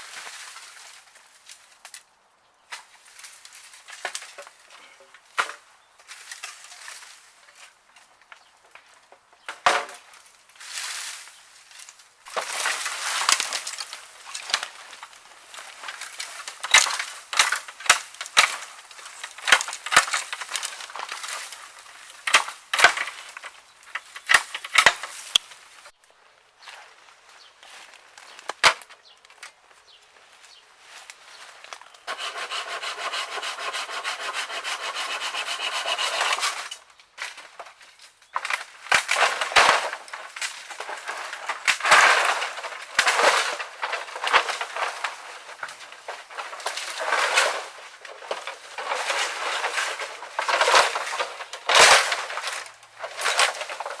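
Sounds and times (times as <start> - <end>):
bamboo cracking and snapping: 0.1 - 2.1, 2.7 - 8.8, 9.5 - 26.2, 27.8 - 29.8, 36.3 - 54.0
wood rubbing and scraping: 12.4 - 25.9, 32.0 - 36.8, 38.4 - 54.0
steady rasp: 32.1 - 36.7.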